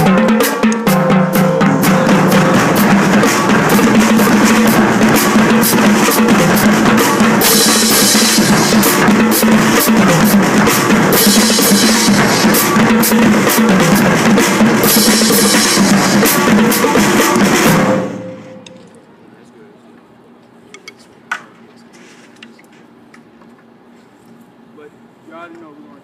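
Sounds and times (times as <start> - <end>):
snare and bass drums: 0.0 - 18.7.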